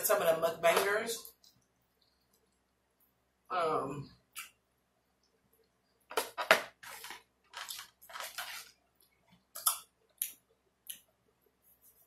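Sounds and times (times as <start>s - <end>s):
utensil scraping food container: 6.8s - 8.7s.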